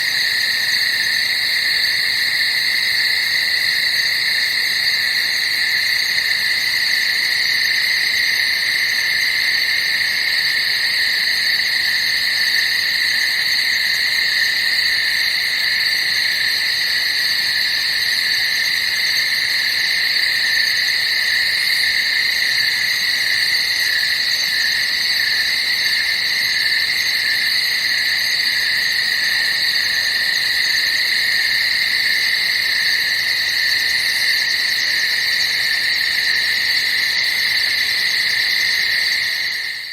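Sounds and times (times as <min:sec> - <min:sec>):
night insects trilling: 0:00.0 - 0:39.9.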